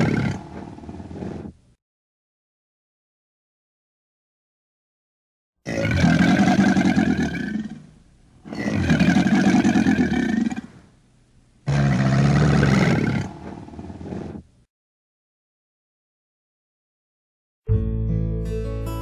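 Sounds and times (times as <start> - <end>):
alligator calling: 0.0 - 1.5, 5.7 - 10.9, 11.6 - 14.5.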